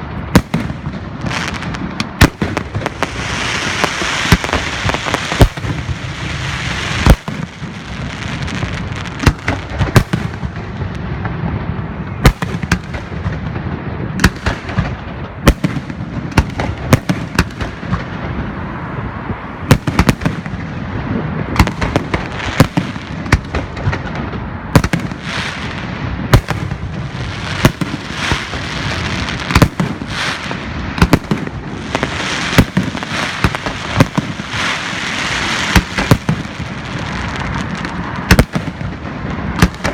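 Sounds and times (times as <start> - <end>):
fireworks bangs: 0.0 - 39.9
fireworks crackling hiss: 0.0 - 39.9.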